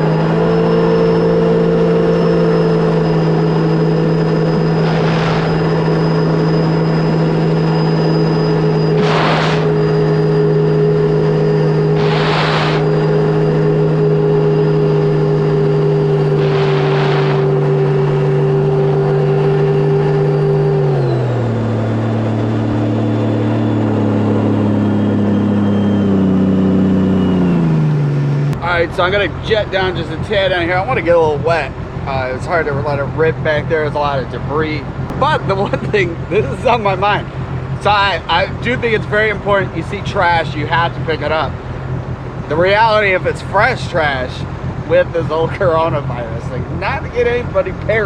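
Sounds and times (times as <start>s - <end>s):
high whine: 0.0s - 48.0s
jet ski engine running: 0.0s - 48.0s
bursts of rushing noise: 3.8s - 14.2s, 15.8s - 20.3s.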